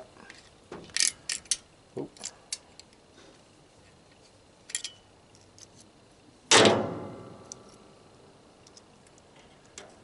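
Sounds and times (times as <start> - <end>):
metal parts clicking: 0.9 - 1.6, 4.7 - 5.8
sharp metallic clank: 6.5 - 7.6.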